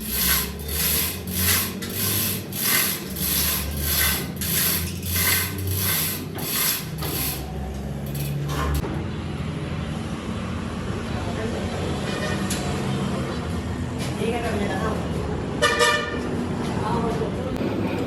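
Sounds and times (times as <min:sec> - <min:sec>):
hand tool rasping on metal: 0:00.0 - 0:08.8.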